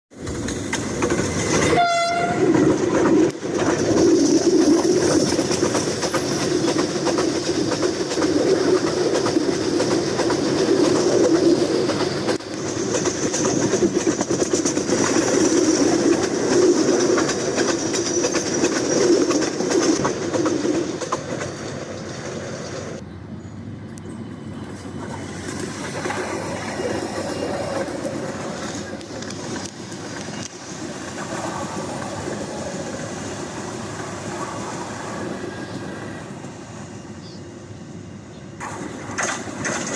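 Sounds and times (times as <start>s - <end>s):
train wheels rumbling over rails: 0.1s - 39.9s
train horn blast: 1.7s - 2.6s.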